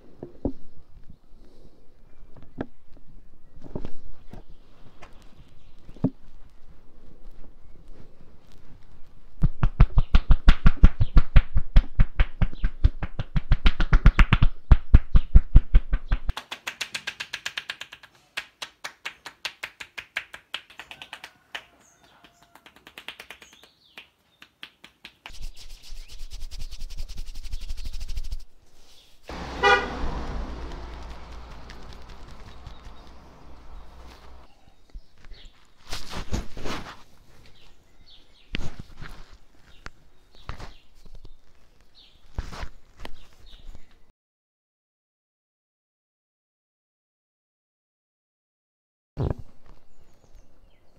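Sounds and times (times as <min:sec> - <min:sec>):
vehicle horn: 0:29.3 - 0:31.8.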